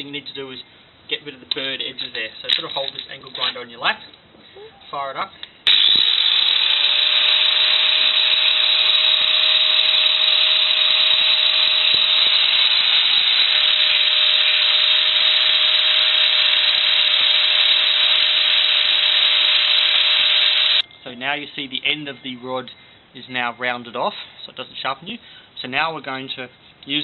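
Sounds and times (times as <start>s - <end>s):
angle grinder grinding steel: 5.7s - 20.8s.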